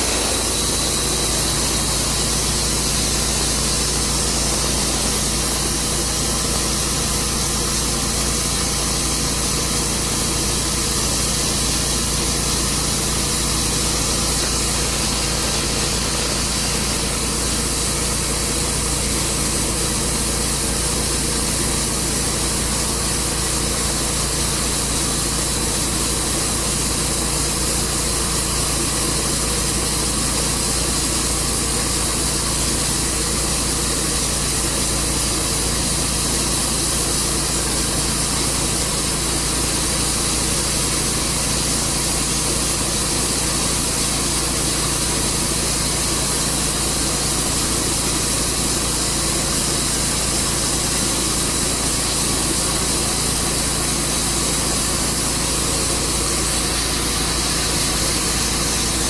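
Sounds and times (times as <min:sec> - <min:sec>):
sawmill engine running: 0:00.0 - 0:27.3
loud hiss: 0:00.0 - 0:59.0.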